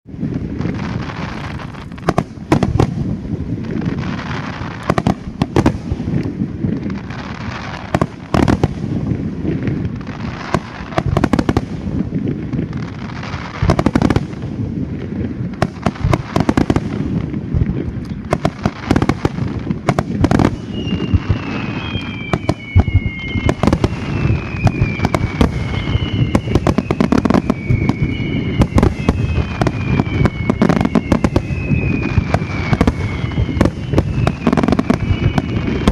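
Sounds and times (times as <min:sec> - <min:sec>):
firework shells bursting: 0:00.6 - 0:03.1, 0:15.5 - 0:35.9
firework whistles falling in pitch: 0:10.0 - 0:11.6, 0:18.2 - 0:35.9.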